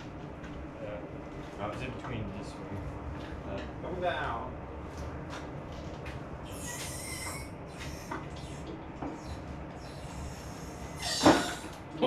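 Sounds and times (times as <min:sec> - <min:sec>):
hoist squeaking: 0:06.5 - 0:11.8.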